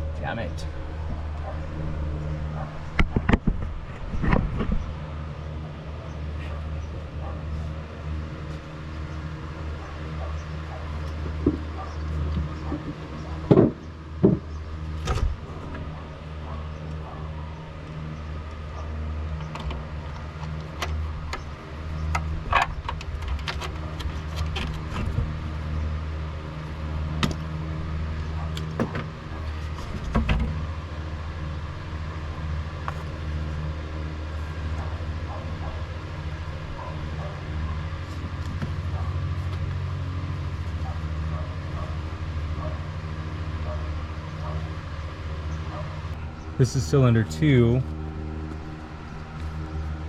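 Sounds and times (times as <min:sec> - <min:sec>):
steady low hum: 0:00.0 - 0:50.0.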